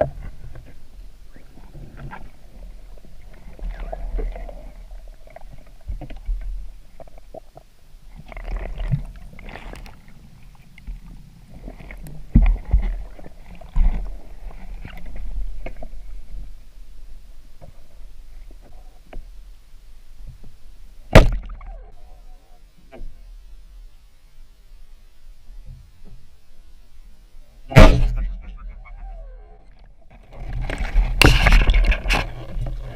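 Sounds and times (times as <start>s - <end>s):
water knocks and swishes: 0.0s - 19.4s, 29.6s - 32.9s
muffled underwater rumble: 0.0s - 32.9s.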